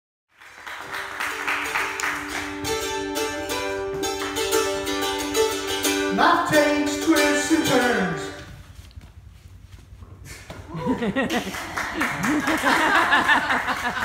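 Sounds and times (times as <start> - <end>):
plucked string instrument: 1.0 - 8.5.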